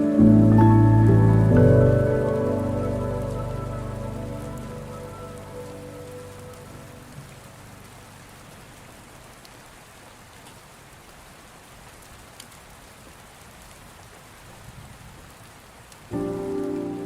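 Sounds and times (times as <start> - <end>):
soft music with sustained chords: 0.0 - 9.1, 16.1 - 17.0
steady rain: 0.0 - 17.0.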